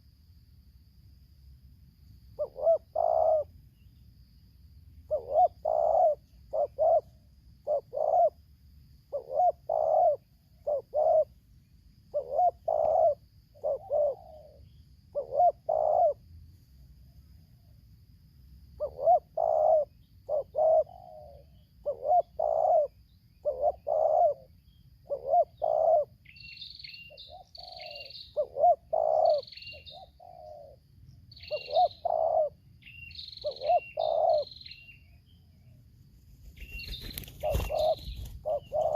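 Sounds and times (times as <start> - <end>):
small bird chirping: 2.3 - 8.4, 9.1 - 16.2, 18.8 - 38.9
doves cooing: 2.4 - 3.5, 5.1 - 8.4, 9.1 - 11.4, 12.1 - 16.2, 18.8 - 26.2, 27.2 - 30.8, 31.5 - 32.6, 33.4 - 34.6, 36.5 - 38.9.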